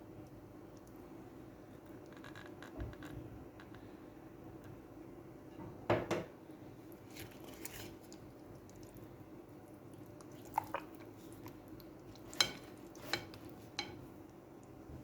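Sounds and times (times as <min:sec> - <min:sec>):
chicken squelching in marinade: 0:07.0 - 0:13.8.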